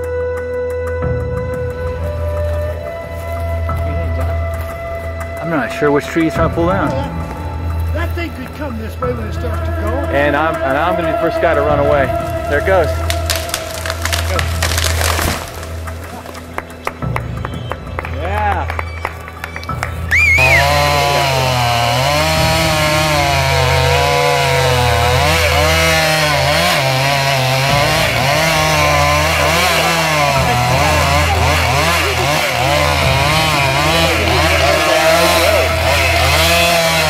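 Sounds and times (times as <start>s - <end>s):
chainsaw cutting wood: 6.2s - 18.1s, 18.8s - 37.0s.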